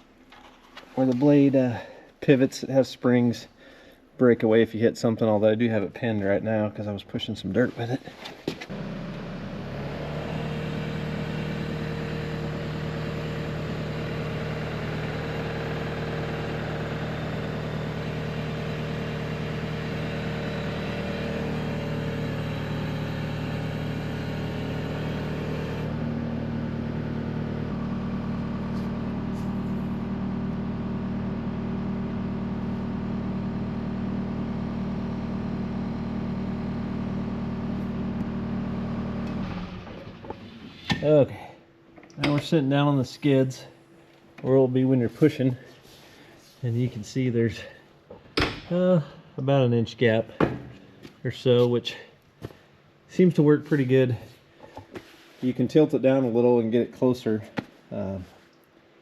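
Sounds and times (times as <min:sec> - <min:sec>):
loader engine running: 0:08.7 - 0:40.7.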